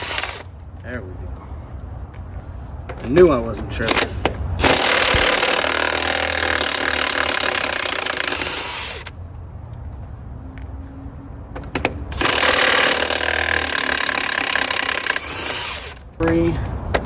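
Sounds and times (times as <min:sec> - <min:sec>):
impact wrench hammering: 0:03.9 - 0:09.1.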